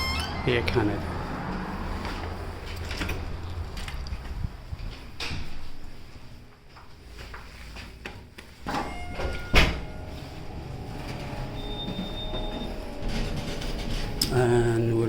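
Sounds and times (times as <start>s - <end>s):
elevator doors sliding: 0.0s - 4.2s, 8.6s - 15.0s
low hum of elevator car: 8.6s - 15.0s.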